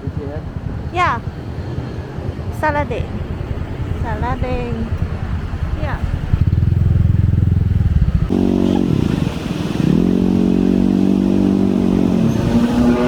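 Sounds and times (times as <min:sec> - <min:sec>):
small engine revving: 0:07.9 - 0:13.0.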